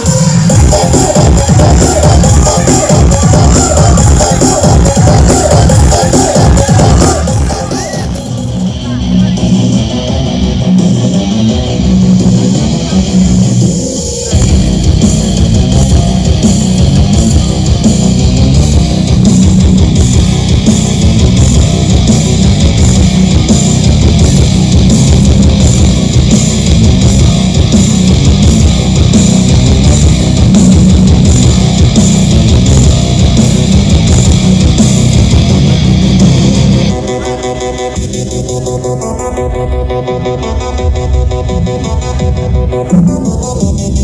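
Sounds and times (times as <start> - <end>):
rising sweep: 0.0 - 24.4
loud rock music: 0.0 - 44.0.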